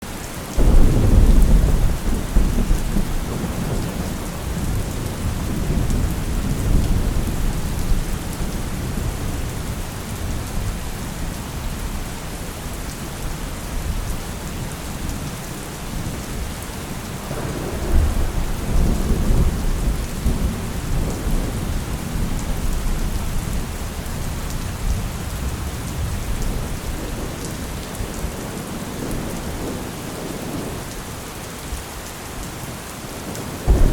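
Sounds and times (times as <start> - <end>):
steady rain: 0.0 - 33.9
rolling thunder: 0.6 - 11.9, 17.3 - 23.6, 33.6 - 33.9.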